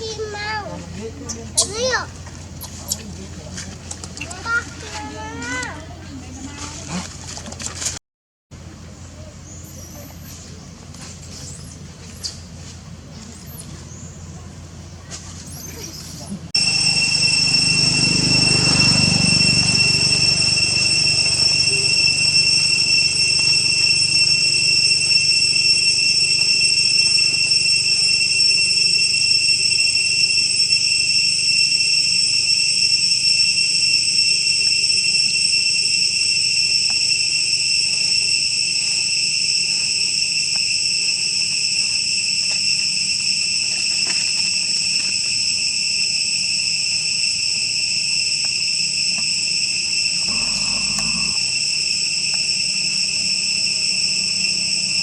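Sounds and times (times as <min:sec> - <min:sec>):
insects trilling: 0:00.0 - 0:03.3, 0:15.4 - 0:55.0.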